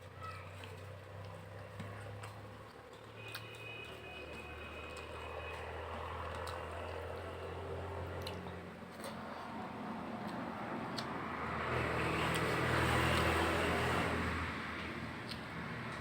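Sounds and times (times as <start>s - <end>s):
chewing and hand-mixing rice: 0.0s - 14.1s, 14.7s - 16.0s.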